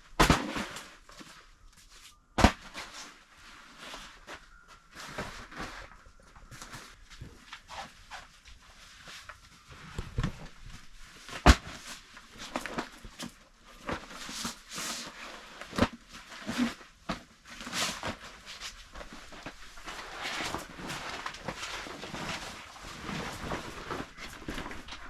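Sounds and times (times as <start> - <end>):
rustling: 0.2 - 25.0.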